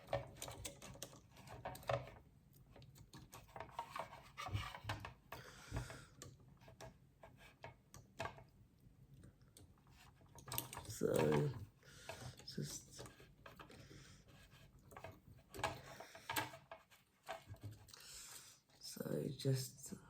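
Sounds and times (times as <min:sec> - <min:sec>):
plastic rubbing: 0:00.0 - 0:08.4.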